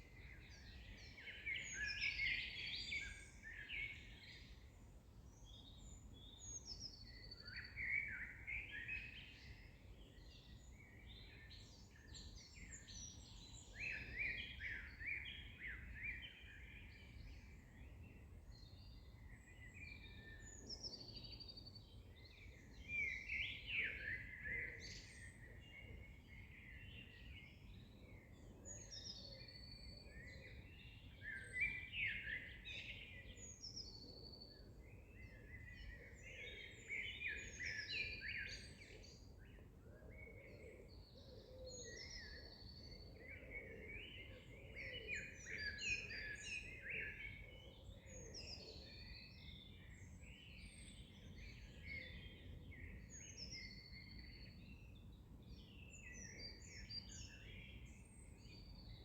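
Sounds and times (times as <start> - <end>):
songbirds singing and chirping: 0.0 - 59.0.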